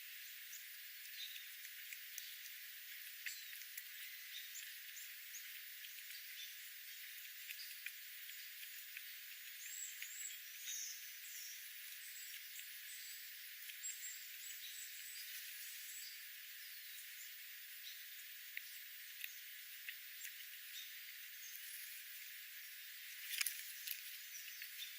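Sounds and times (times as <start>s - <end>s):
small birds chirping: 0.0s - 24.9s
steady hiss: 0.0s - 24.9s
light ticks: 1.0s - 10.8s, 13.5s - 13.9s, 18.5s - 20.6s.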